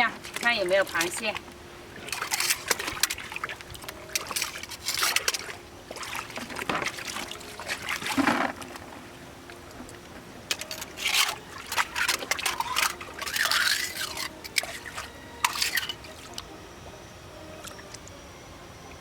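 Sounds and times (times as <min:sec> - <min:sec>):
seawater splashing and sloshing: 0:00.0 - 0:18.2.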